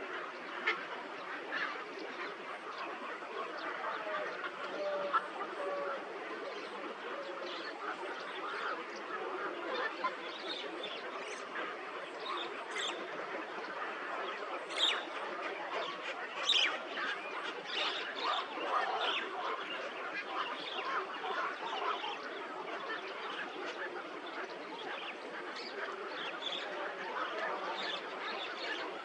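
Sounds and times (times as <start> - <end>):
flock of birds chattering: 0.0 - 29.0.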